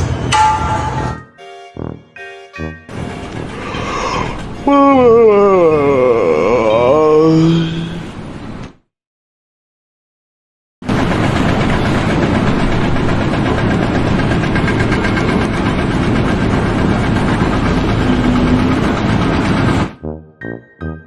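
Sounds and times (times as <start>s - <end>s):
music with pulsing beat: 0.0s - 4.7s
heavy engine running: 0.0s - 6.1s, 10.8s - 21.0s.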